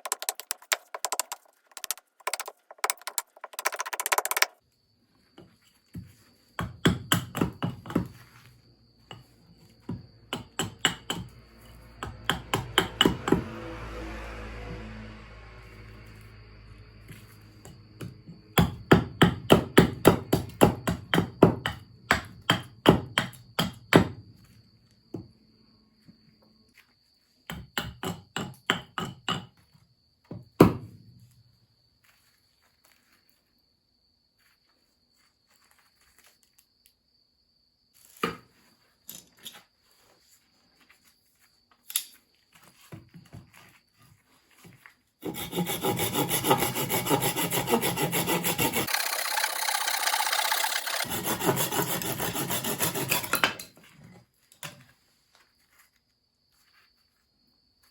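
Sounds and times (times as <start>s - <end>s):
rasping on wood: 45.2s - 53.4s.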